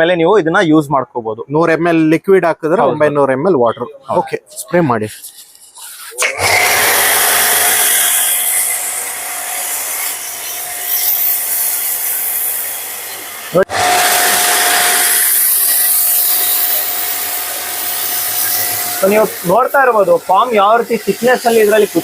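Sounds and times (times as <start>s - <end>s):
pressure washer spraying hiss: 5.1s - 22.0s.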